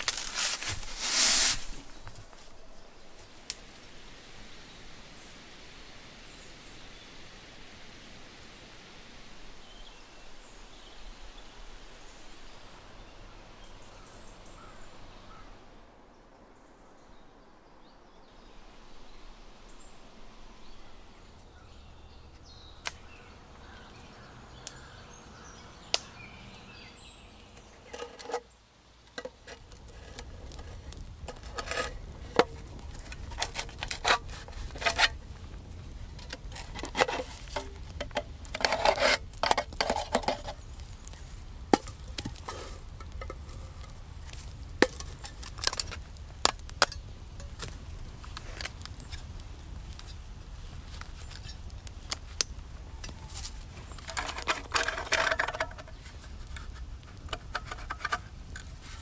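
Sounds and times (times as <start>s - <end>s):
outdoor background hiss: 0.0s - 59.0s.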